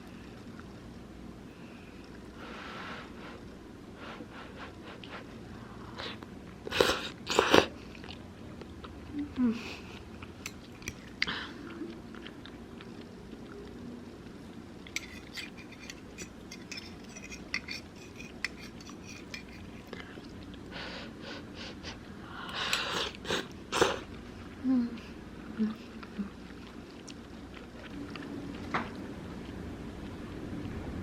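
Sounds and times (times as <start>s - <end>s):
person chewing: 10.0s - 20.7s, 25.9s - 29.6s
utensils clicking on a dish: 14.9s - 20.0s.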